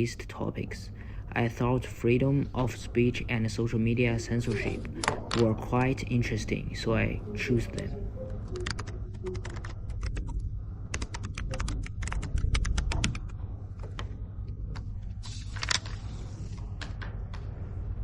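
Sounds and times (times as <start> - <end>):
low room hum: 0.0 - 18.0
keyboard typing: 7.4 - 14.1.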